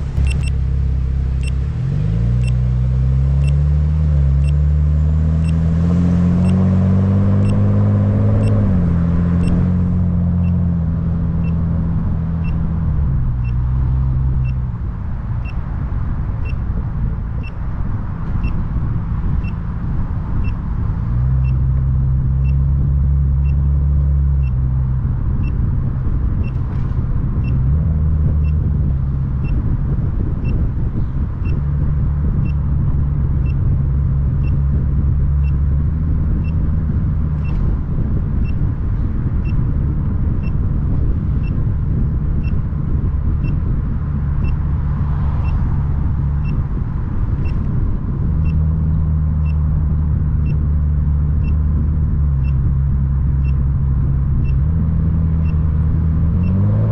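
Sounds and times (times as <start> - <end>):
short high-pitched beeps: 0.0 - 0.6, 2.4 - 2.6, 3.4 - 3.6, 4.4 - 4.6, 5.4 - 5.6, 6.4 - 8.6, 9.3 - 9.7, 11.4 - 11.6
car engine and road rumble: 0.0 - 56.9.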